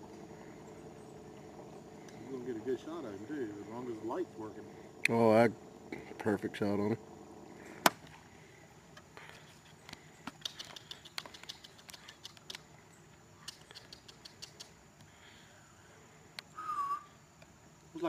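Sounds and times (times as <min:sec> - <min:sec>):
light ticks and patter: 0:09.0 - 0:12.7, 0:13.4 - 0:15.1.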